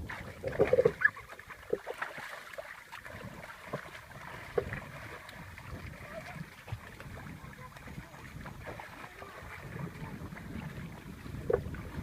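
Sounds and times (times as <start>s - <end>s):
water sloshing and splashing: 0.0s - 12.0s.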